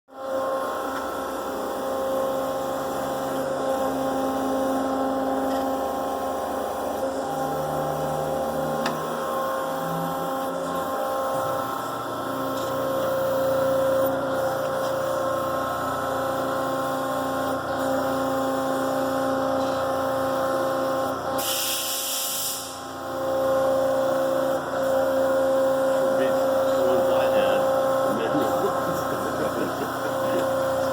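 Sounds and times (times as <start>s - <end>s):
surface grinder machine hum: 0.1s - 30.9s
high hiss: 21.4s - 22.8s.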